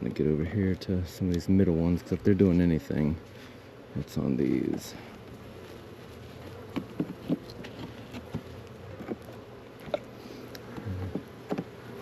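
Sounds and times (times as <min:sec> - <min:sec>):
bees buzzing: 0:00.0 - 0:12.0
wooden hive frames knocking: 0:06.4 - 0:12.0.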